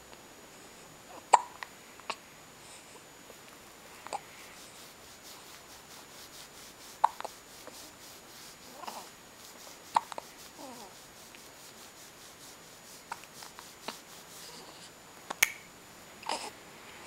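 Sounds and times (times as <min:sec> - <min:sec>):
hiccups: 0:01.2 - 0:01.6.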